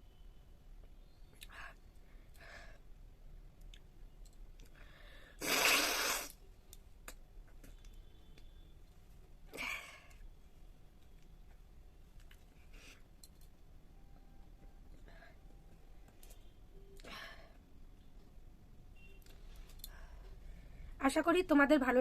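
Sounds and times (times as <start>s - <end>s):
woman breathing: 1.5s - 2.9s, 4.7s - 5.4s, 15.0s - 15.5s, 19.6s - 21.0s.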